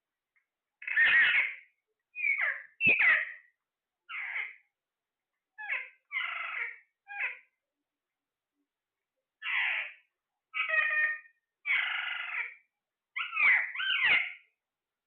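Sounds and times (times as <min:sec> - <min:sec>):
parrot calling harshly: 0:00.8 - 0:03.5, 0:04.1 - 0:04.6, 0:05.6 - 0:07.5, 0:09.4 - 0:14.5.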